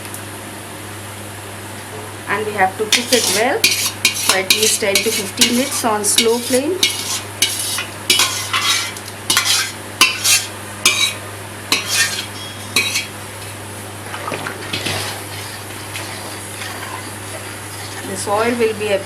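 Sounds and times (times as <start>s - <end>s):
spoon scraping a cooking pot: 2.9s - 13.1s, 14.7s - 18.2s.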